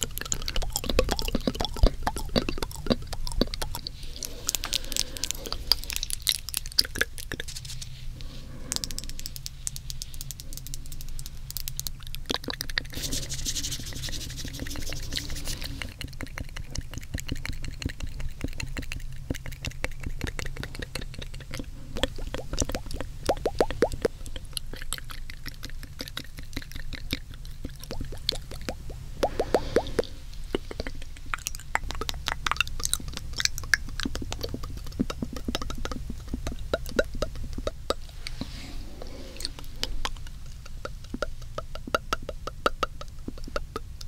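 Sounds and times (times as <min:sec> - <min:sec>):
wet mouth clicks and smacks: 0:00.0 - 0:08.0, 0:08.6 - 0:38.5, 0:39.4 - 0:44.0
soft hiss: 0:03.0 - 0:12.0, 0:12.8 - 0:15.9, 0:27.8 - 0:33.6, 0:37.5 - 0:41.6.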